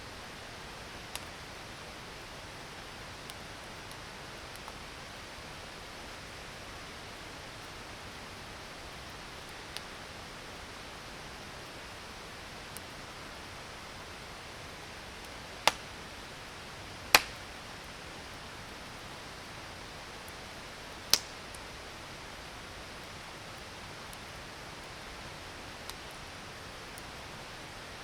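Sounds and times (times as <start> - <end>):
steady fire hiss: 0.0 - 28.0
campfire popping and cracking: 1.0 - 1.4, 15.1 - 16.4, 17.0 - 17.6, 20.2 - 21.7, 25.3 - 26.3.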